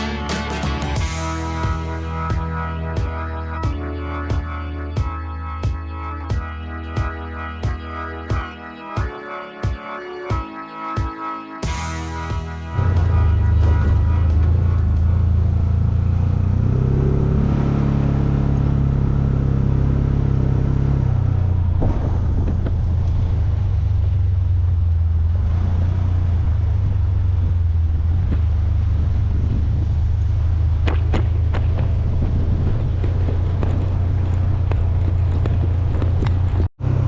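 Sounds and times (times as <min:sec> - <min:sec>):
vehicle engine and road rumble: 0:00.0 - 0:08.2, 0:11.7 - 0:37.0.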